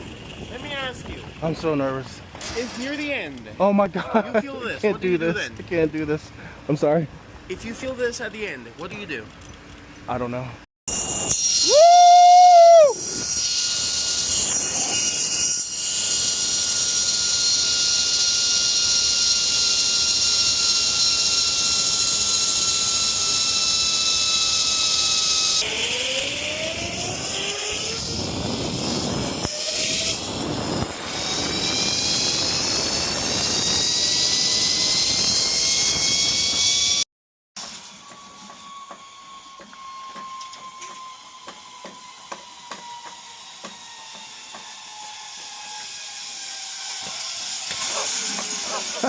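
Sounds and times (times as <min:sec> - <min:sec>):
pulley wheels whining on cable: 0:10.9 - 0:37.0, 0:37.6 - 0:49.0
loud high cry: 0:11.6 - 0:13.1.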